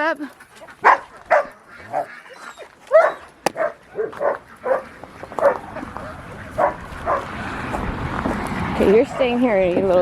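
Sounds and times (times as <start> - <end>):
dog barking: 0.8 - 2.2, 2.9 - 7.3.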